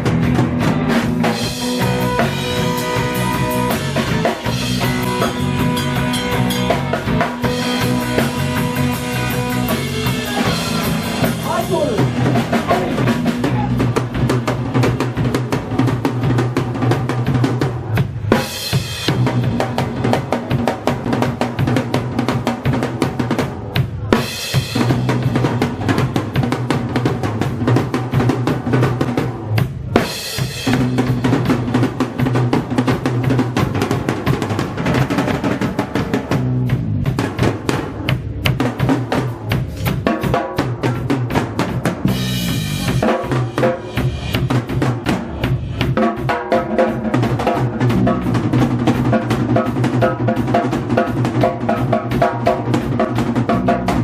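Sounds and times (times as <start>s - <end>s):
low bass line: 0.0s - 15.8s, 36.0s - 37.3s
drum kit snare and cymbals: 0.0s - 54.0s.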